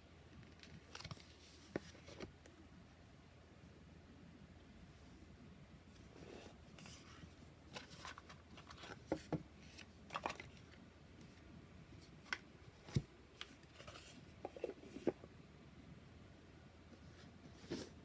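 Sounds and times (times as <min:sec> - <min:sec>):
cards rustling: 0:06.8 - 0:10.8, 0:12.0 - 0:15.1.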